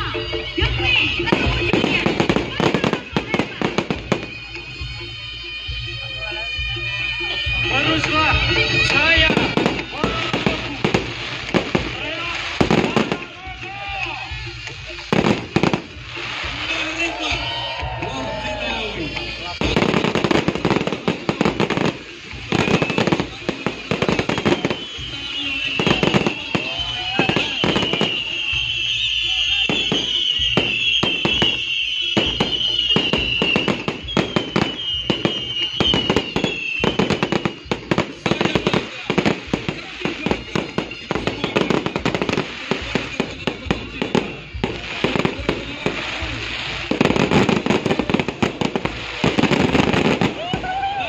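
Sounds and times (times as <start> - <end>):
fireworks bangs and crackles: 0.1 - 51.0
high wavering whistle: 19.3 - 45.4.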